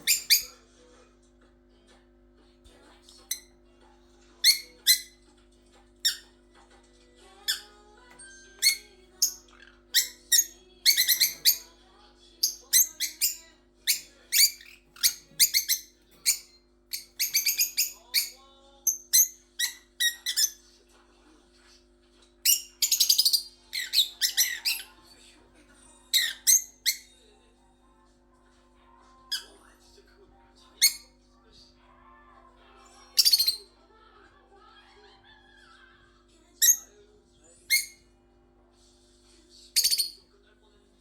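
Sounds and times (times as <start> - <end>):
parrots chirping and squawking: 0.0 - 0.7, 3.2 - 3.6, 4.2 - 11.8, 12.4 - 20.6, 22.4 - 25.2, 26.1 - 27.2, 29.1 - 29.7, 30.8 - 31.2, 32.8 - 33.8, 36.6 - 37.0, 37.6 - 38.1, 39.8 - 40.3.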